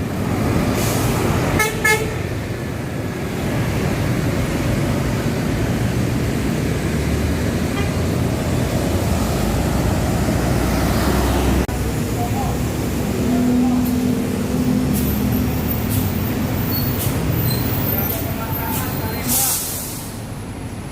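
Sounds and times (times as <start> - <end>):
city road traffic: 0.0 - 20.9
heavy engine rumble: 0.0 - 20.9
vehicle horn toots: 1.6 - 2.2.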